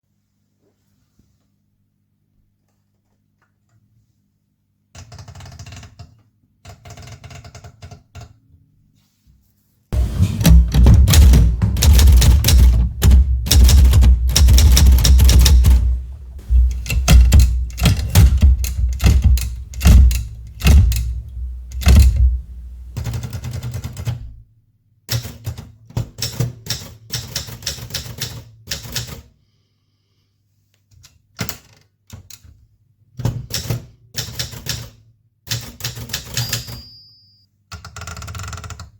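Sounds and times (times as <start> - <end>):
manual typewriter key clacks: 10.0 - 23.3.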